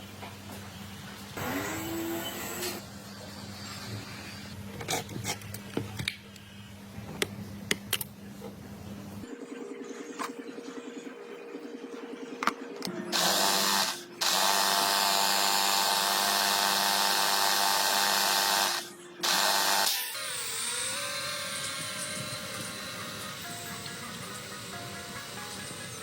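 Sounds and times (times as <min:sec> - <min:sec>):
small electric motor whirring: 0:13.1 - 0:24.7.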